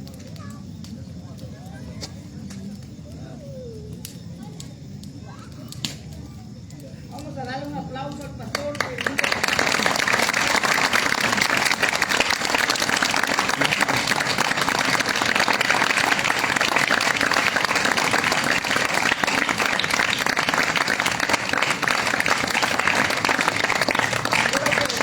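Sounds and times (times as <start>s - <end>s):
children clapping: 8.4s - 25.0s.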